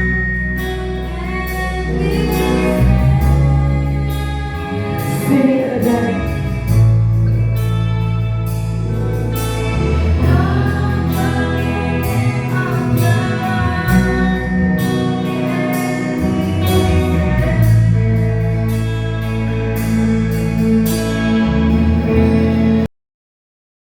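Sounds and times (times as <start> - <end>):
guitar chords: 0.0 - 22.9
held bass notes: 0.0 - 22.9
worship band playing slow song: 0.0 - 22.9
person singing: 0.8 - 6.8, 9.5 - 19.5.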